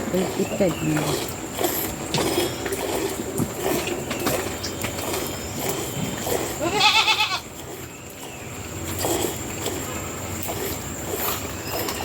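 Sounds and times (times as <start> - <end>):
goat bleating: 6.6 - 7.5.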